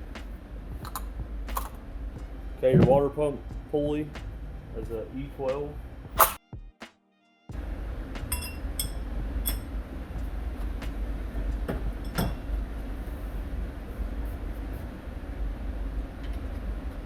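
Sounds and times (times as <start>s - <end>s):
steady low rumble: 0.0s - 6.4s, 7.5s - 17.0s
metal tools clinking: 8.3s - 9.7s.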